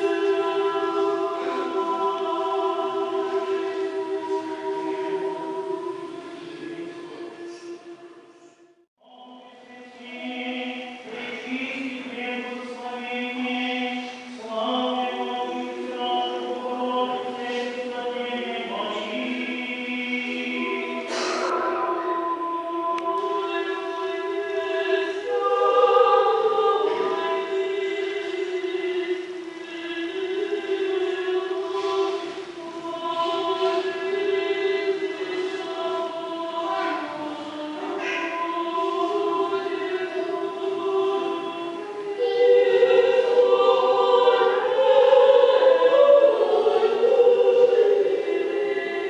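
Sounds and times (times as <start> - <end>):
choir chanting: 0.0 - 49.0.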